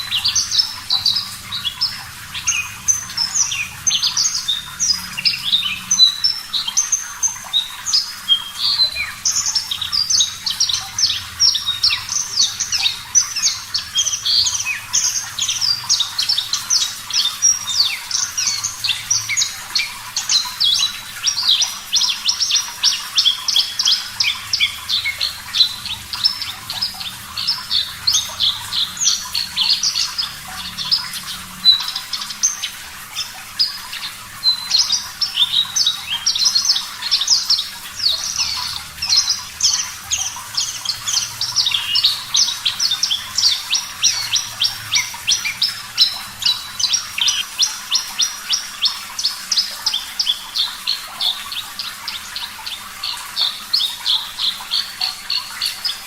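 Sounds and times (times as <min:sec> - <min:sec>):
bush lark singing chirps and trills: 0:00.0 - 0:56.0.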